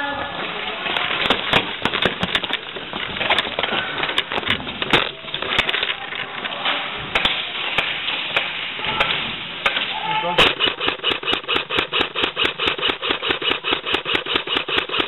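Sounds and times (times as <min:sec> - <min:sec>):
pellets striking hard surfaces: 0:00.5 - 0:15.0
airsoft guns firing: 0:10.4 - 0:15.0.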